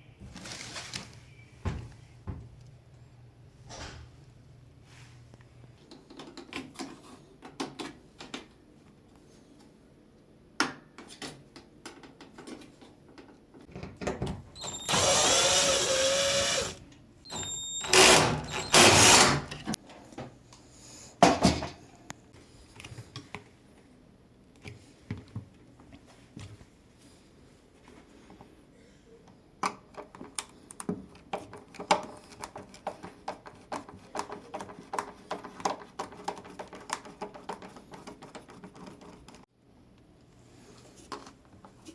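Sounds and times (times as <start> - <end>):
cordless drill whining: 14.6 - 19.6.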